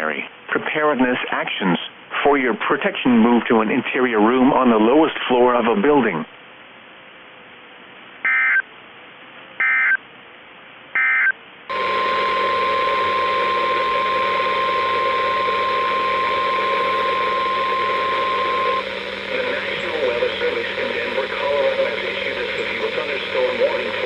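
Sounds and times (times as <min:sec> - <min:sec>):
hiss and low hum: 0:10.1 - 0:24.0
steady alarm tone: 0:11.0 - 0:24.0
warbling data bursts: 0:11.0 - 0:24.0.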